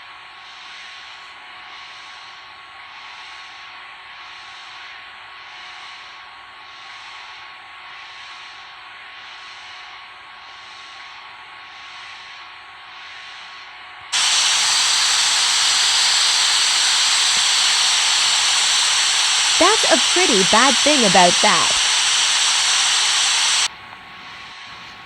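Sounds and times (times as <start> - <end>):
faint steady hiss: 14.2 - 25.0
loud steady hiss: 14.2 - 25.0.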